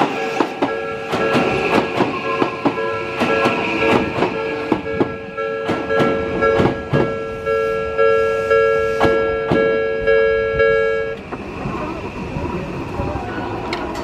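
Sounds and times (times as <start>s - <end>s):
train wheels clacking: 0.0s - 7.7s, 8.9s - 9.8s
level crossing bell ringing: 2.8s - 11.2s.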